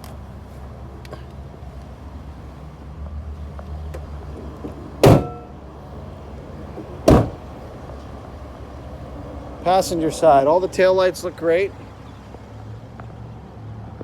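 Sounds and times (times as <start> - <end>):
van door slamming: 3.9 - 5.6, 6.7 - 7.6
short metallic ring: 5.0 - 5.6.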